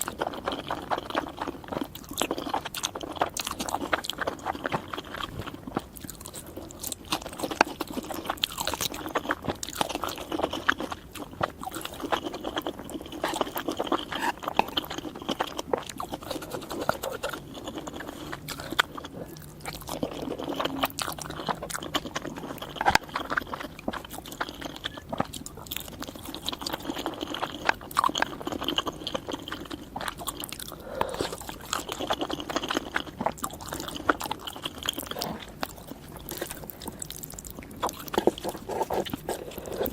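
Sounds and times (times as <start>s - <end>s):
chewing noodles: 0.0s - 39.9s.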